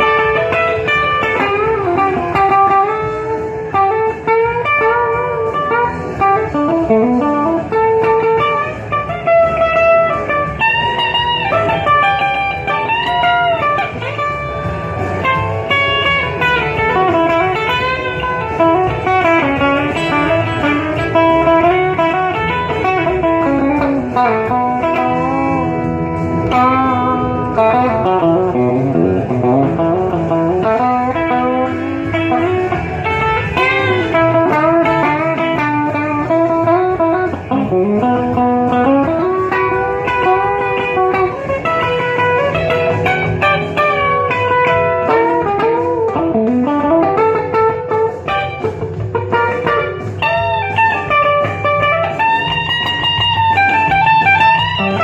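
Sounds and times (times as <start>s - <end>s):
rockabilly electric guitar music: 0.0s - 55.0s.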